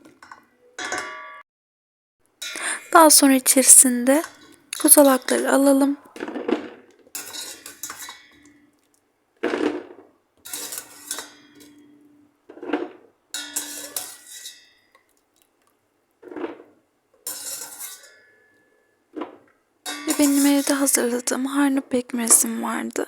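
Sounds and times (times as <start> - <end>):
metal utensil clanking against pot: 7.2 - 8.5, 10.5 - 11.9, 13.4 - 14.8, 17.3 - 18.5, 19.9 - 20.9.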